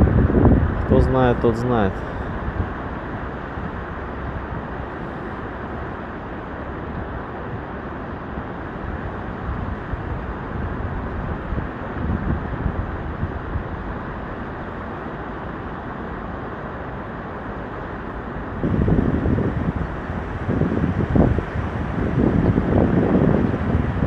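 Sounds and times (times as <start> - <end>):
wind on microphone: 0.0 - 5.8, 8.4 - 14.8, 18.5 - 24.0.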